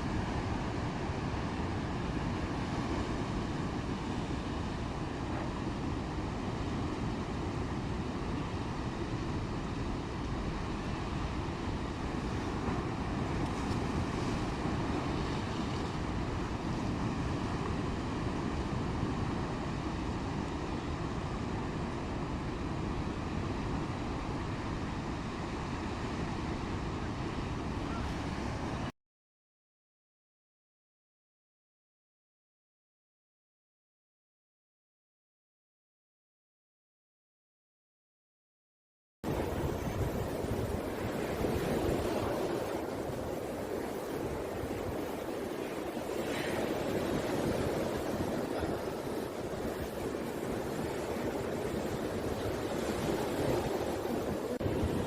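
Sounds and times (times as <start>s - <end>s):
rough heaving sea: 0.0s - 28.9s, 39.2s - 55.0s
wind rumbling: 39.2s - 55.0s.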